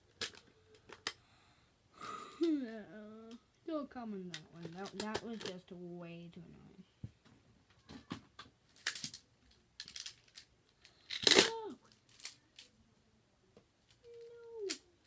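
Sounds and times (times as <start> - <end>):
plastic magnet blocks clicking: 0.1 - 1.2, 4.3 - 5.6, 8.8 - 9.2, 9.8 - 12.7.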